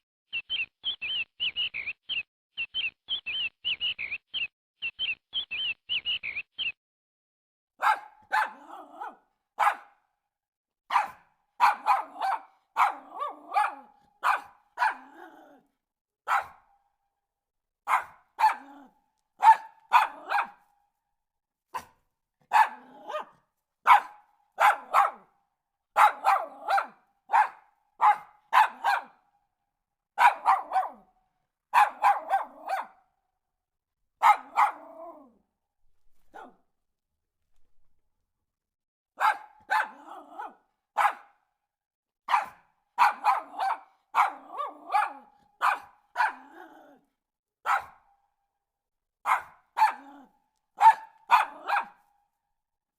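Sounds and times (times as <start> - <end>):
dog barking: 7.8 - 10.1, 10.9 - 15.6, 16.2 - 16.8, 17.8 - 20.7, 21.7 - 29.3, 30.2 - 31.1, 31.7 - 33.1, 34.2 - 35.4, 36.1 - 36.6, 39.2 - 41.6, 42.2 - 47.0, 47.6 - 48.1, 49.2 - 52.1.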